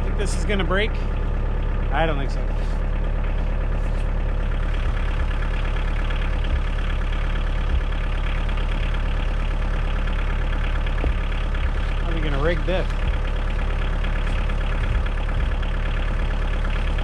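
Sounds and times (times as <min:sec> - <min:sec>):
tractor diesel engine running: 0:00.0 - 0:17.0.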